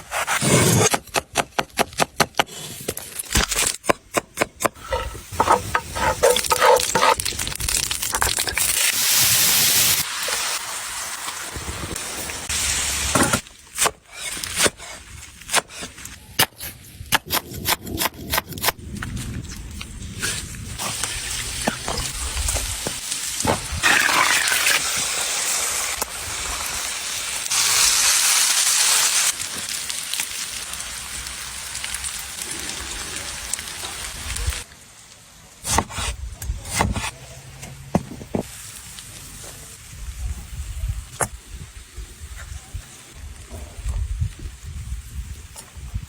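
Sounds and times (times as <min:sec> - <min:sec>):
meat sizzling on hot stone: 0:04.8 - 0:13.6, 0:20.2 - 0:34.6, 0:38.4 - 0:46.0.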